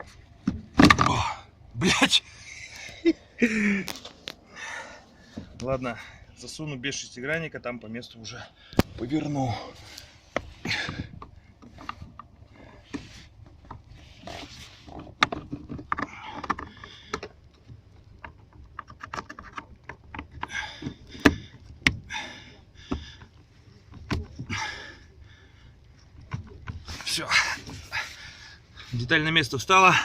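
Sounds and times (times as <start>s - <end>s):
scraping and rustling: 9.7s - 21.8s
plastic clicks and knocks: 14.9s - 22.1s, 22.8s - 24.5s.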